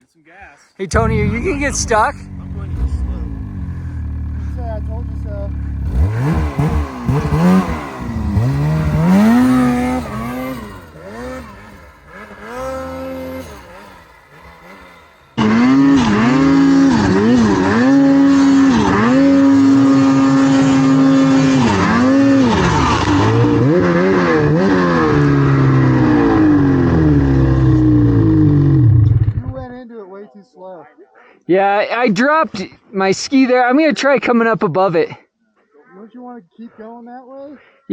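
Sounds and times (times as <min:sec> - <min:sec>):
close snowmobile engine held high: 0:00.9 - 0:29.7
snowmobile engine revving: 0:00.9 - 0:29.7.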